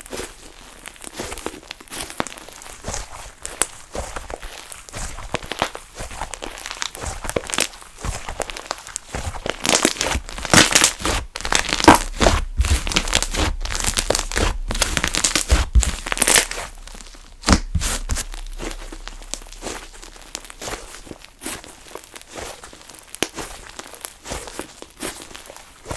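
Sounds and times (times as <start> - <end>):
slime crackling and clicking: 6.4 - 25.7.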